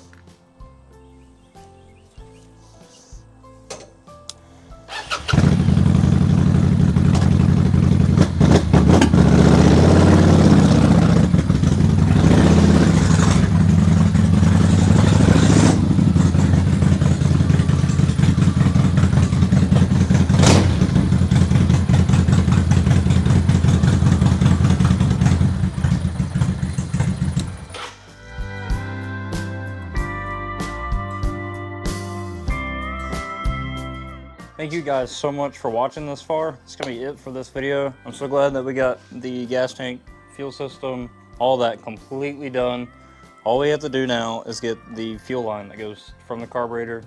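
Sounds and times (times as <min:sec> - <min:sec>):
car engine starting and revving: 0:04.9 - 0:28.0.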